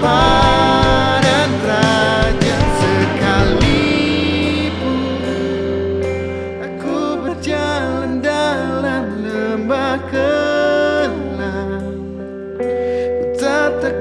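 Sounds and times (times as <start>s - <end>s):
held instrumental chords: 0.0s - 9.2s
person singing: 0.0s - 14.0s.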